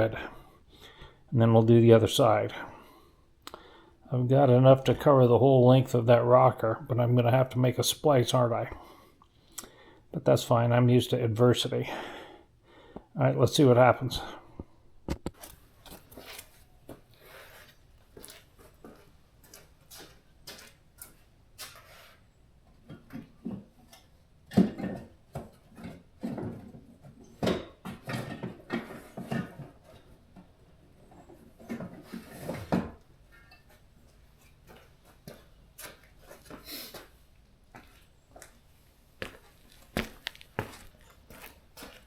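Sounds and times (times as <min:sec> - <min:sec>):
handling knocks and rustles: 0:15.0 - 0:38.6.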